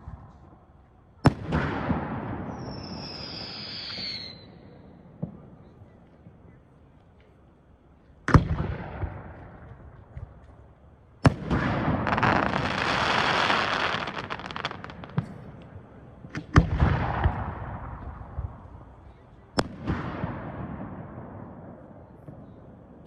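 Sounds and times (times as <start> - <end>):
fireworks bangs: 1.2 - 5.8, 11.2 - 22.8
fireworks crackling: 11.3 - 20.0.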